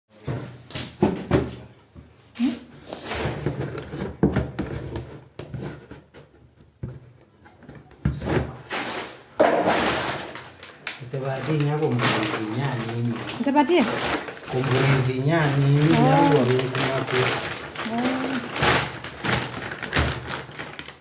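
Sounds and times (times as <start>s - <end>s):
knocks and scrapes on a feed tank: 0.2s - 1.7s, 3.0s - 7.1s, 8.1s - 10.4s
rustling: 8.6s - 21.0s.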